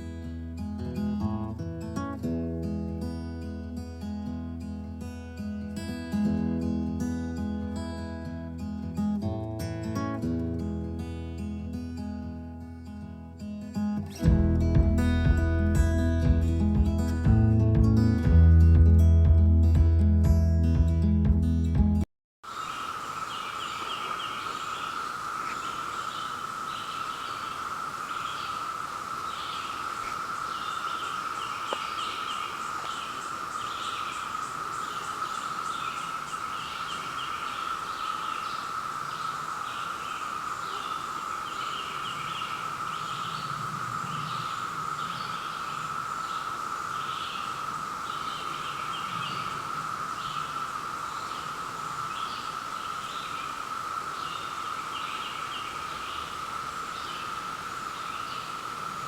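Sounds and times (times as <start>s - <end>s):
cicada chirps: 22.4s - 59.0s
cicadas droning: 22.4s - 59.0s.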